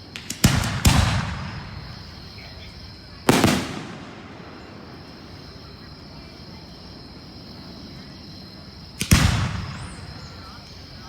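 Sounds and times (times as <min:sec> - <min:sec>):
crickets chirring: 0:00.0 - 0:11.0
firework shell bursting: 0:03.2 - 0:05.1.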